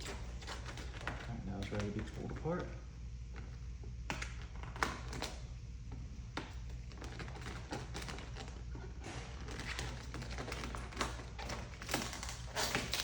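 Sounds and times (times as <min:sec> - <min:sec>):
steady low hum: 0:00.0 - 0:13.0
film peeling crackles: 0:06.6 - 0:13.0.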